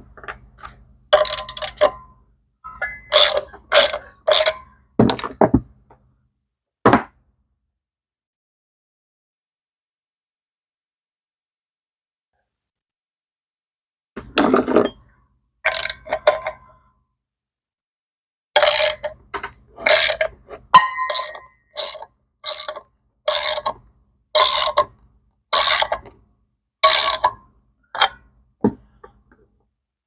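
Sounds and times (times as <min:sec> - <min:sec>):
hand tool rasping on metal: 0:24.4 - 0:24.9, 0:25.6 - 0:26.0.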